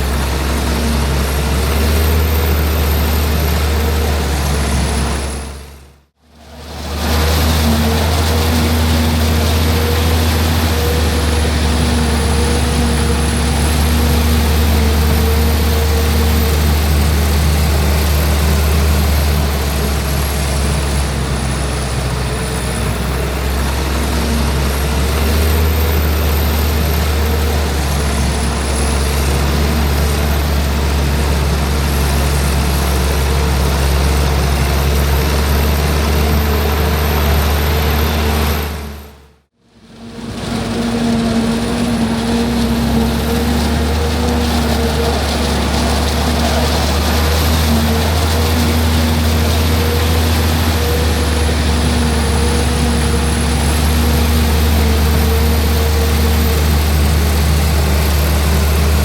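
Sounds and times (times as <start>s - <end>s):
deep diesel engine drone: 0.0s - 59.0s.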